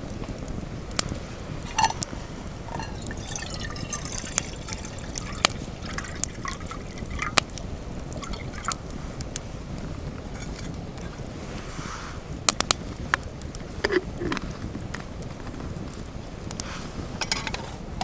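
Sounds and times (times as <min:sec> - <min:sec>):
steady low rumble: 0:00.0 - 0:18.0
liquid pouring and dripping: 0:01.6 - 0:09.8.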